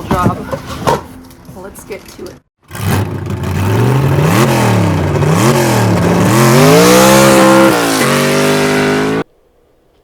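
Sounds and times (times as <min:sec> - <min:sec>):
car engine revving: 0:02.6 - 0:09.3.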